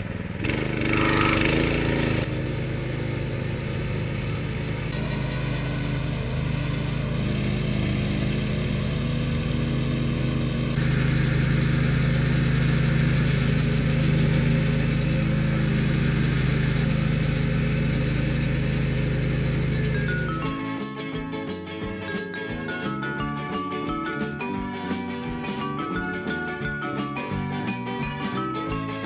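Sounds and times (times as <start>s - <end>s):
engine humming: 0.0s - 20.6s.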